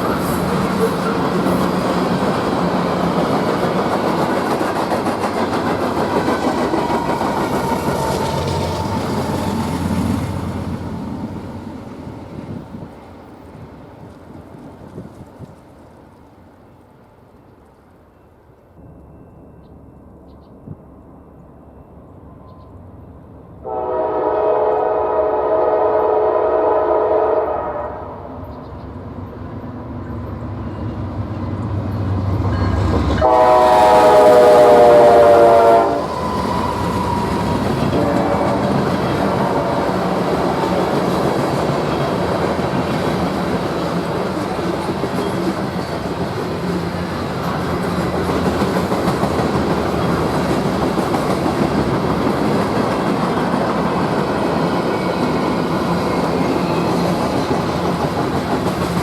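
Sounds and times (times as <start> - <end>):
train wheels rumbling on rails: 0.0 - 22.8, 23.6 - 59.0
locomotive air horn blasts: 23.6 - 28.2, 33.2 - 40.2.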